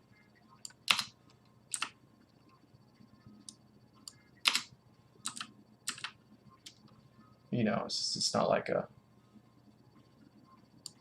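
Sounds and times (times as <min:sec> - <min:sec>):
keyboard keystrokes: 0:00.7 - 0:01.1, 0:01.7 - 0:01.9, 0:04.4 - 0:06.8.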